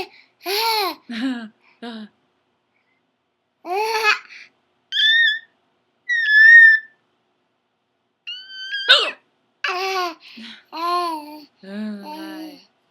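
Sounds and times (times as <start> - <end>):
baby babbling and cooing: 0.0 - 1.0, 3.7 - 4.4, 8.4 - 12.6
baby squealing: 4.9 - 5.5, 6.1 - 7.0, 8.3 - 9.8.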